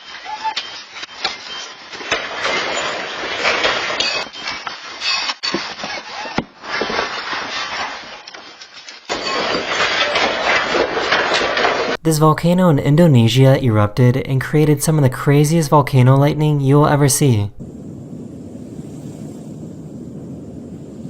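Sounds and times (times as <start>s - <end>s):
objects rattling and crashing: 0.0s - 12.0s.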